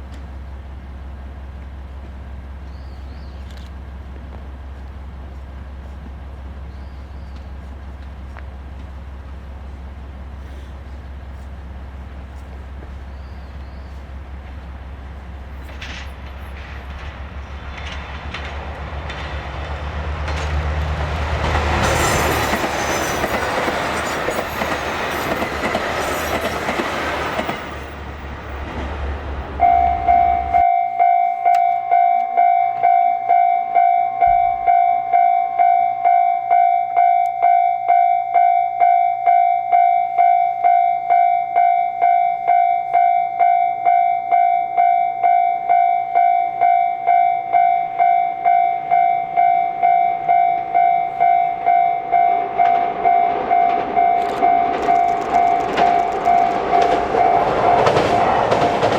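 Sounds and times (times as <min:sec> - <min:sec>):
diesel train passing: 0:00.0 - 0:58.9
level crossing alarm pulsing: 0:29.5 - 0:58.5.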